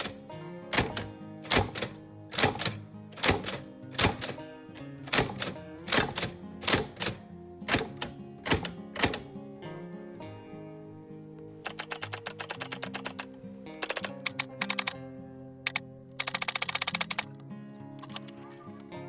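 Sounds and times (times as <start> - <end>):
typewriter keys striking: 0.0 - 9.3, 11.7 - 15.0, 15.7 - 17.3, 18.0 - 18.4
soft background music: 0.0 - 19.0.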